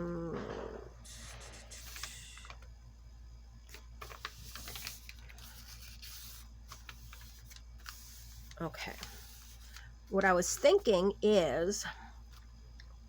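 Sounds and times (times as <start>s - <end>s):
paper rustling: 4.0s - 9.8s.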